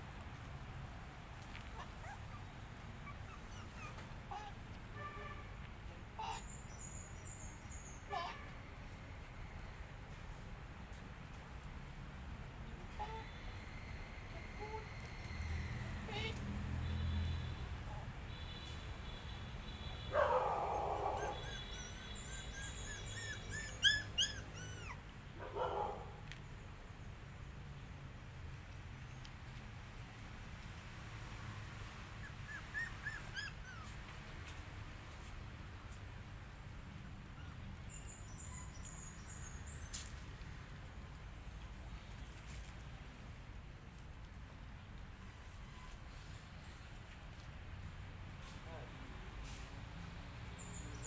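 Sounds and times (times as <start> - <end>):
kittens and puppies mewing: 1.6 - 4.6, 20.2 - 25.2, 32.0 - 34.3.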